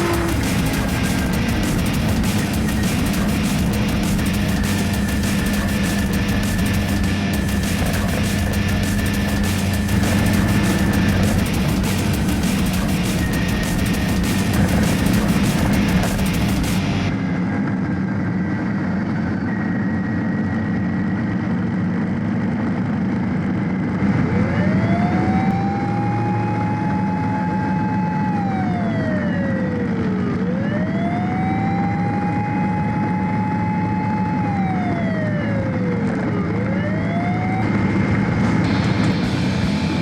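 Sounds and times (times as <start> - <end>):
emergency vehicle siren wailing: 0.0 - 17.8, 24.0 - 40.0
motorcycle engine: 0.0 - 19.5, 32.2 - 40.0.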